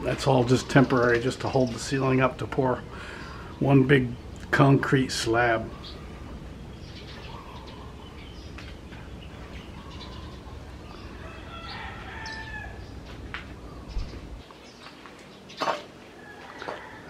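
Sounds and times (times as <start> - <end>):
rooster crowing: 11.0 - 12.9, 16.2 - 17.0
steady low rumble: 12.8 - 14.6.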